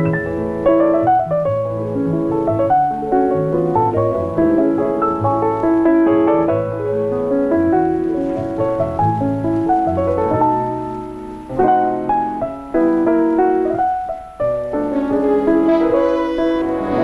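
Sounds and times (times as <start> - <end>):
piano melody over chords: 0.0 - 17.0.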